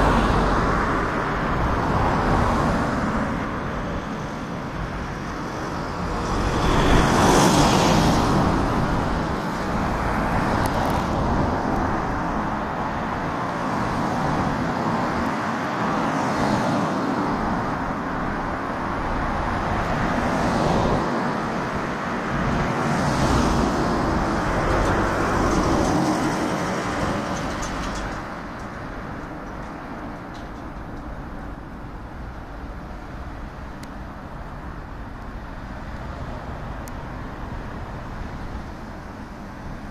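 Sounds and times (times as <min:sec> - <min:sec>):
vehicles passing: 0:00.0 - 0:39.9.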